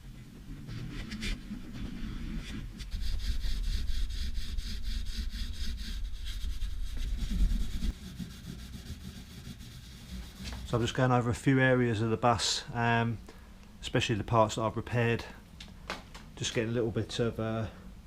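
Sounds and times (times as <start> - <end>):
abrasive rubbing on metal: 0.8 - 10.9.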